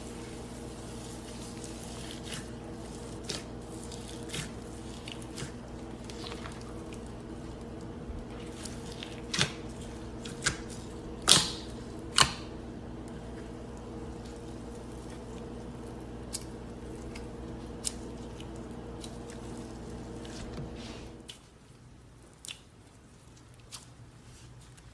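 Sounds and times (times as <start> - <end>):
steady low hum: 0.0 - 22.3
slime squishing: 0.0 - 24.9.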